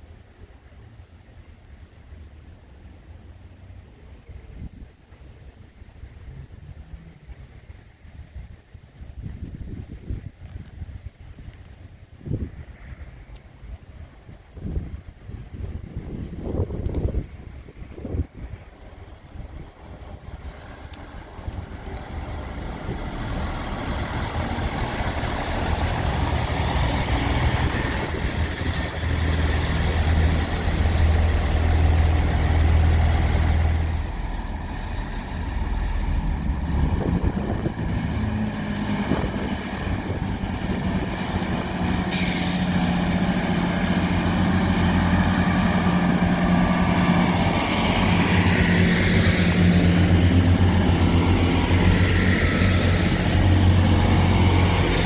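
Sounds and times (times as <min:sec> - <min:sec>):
diesel engine humming: 0:19.4 - 0:55.0
rushing hiss: 0:20.3 - 0:55.0.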